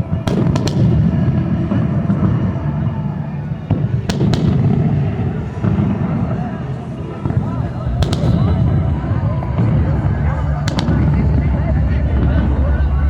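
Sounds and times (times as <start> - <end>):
firework cracks: 0.0 - 2.9, 3.5 - 12.5
low rumble of booms: 4.8 - 13.0.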